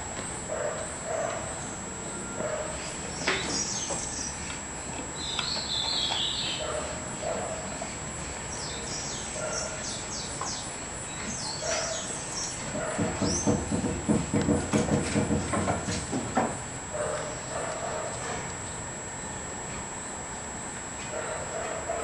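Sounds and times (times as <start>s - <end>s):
high bird chirps: 5.2s - 6.7s.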